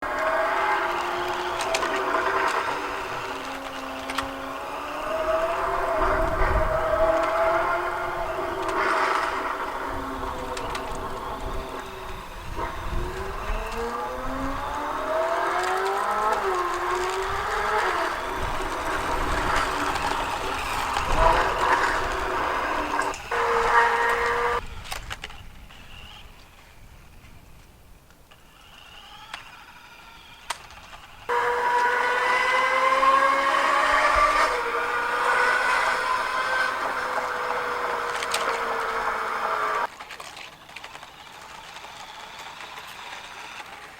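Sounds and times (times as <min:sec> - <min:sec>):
synthetic engine revving from speaker: 0:00.0 - 0:24.6, 0:31.3 - 0:39.9.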